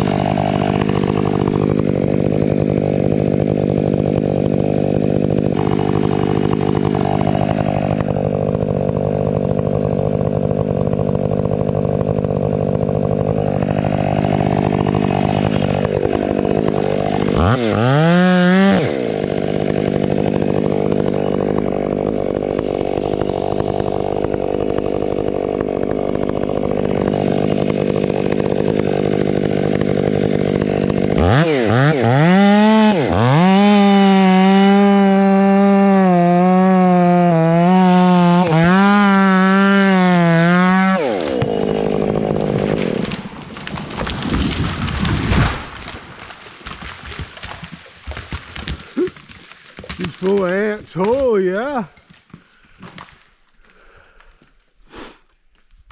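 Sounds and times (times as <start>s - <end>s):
chainsaw revving: 0.0s - 53.1s
chainsaw cutting wood: 0.0s - 55.9s.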